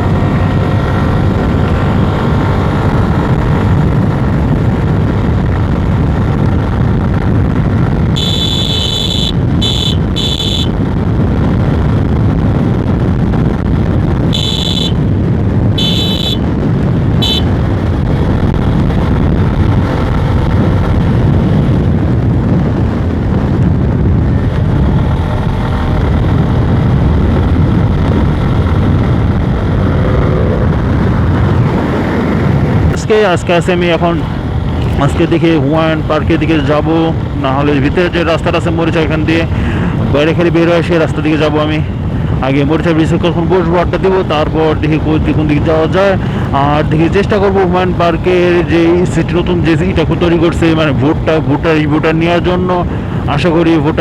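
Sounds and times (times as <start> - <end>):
motorcycle engine at speed: 0.0 - 33.0
wind rush on microphone: 0.0 - 54.0
high-pitched beeps: 8.2 - 10.7, 15.8 - 16.4.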